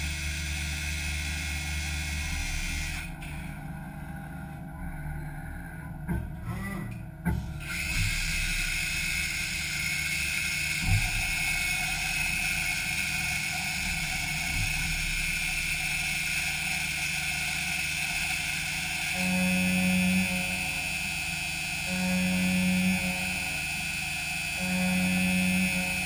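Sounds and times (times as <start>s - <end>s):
machine knocks: 6.0s - 8.2s, 10.8s - 15.6s
lathe high whine and hiss: 7.7s - 26.0s.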